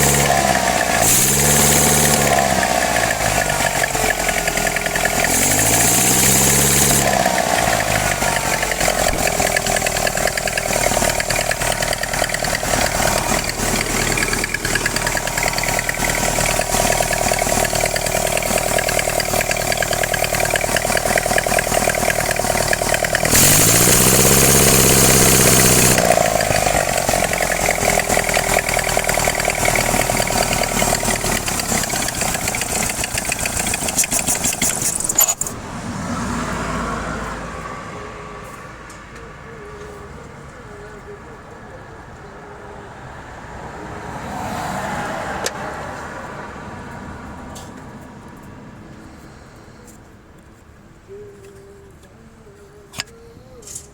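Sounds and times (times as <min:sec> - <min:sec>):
engine revving with hissing rush: 0:00.0 - 0:38.8.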